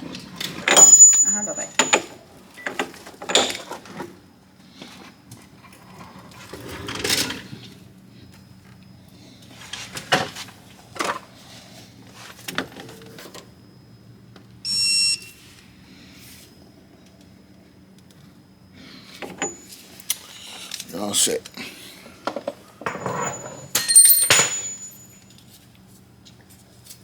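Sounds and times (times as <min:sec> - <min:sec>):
loud electronic beep: 0:14.7 - 0:15.4.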